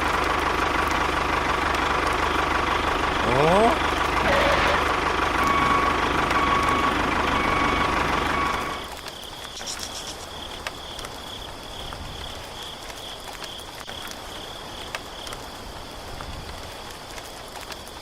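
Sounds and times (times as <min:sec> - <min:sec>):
tractor engine running: 0:00.0 - 0:17.7
high pulsing insect trill: 0:08.6 - 0:18.0.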